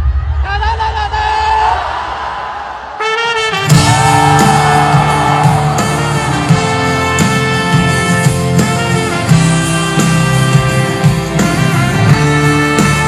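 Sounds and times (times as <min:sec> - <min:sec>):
background music with held chords: 0:03.7 - 0:13.0.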